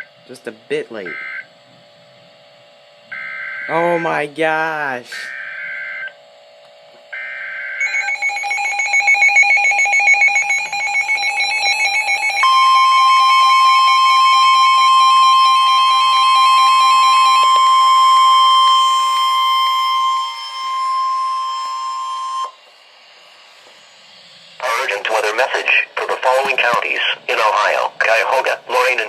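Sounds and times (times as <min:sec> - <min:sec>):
steady warning alarm tone: 0:00.0 - 0:01.6, 0:02.4 - 0:06.4, 0:07.1 - 0:29.0
high data tones: 0:24.6 - 0:29.0
radio beeping in fast pulse: 0:24.6 - 0:29.0.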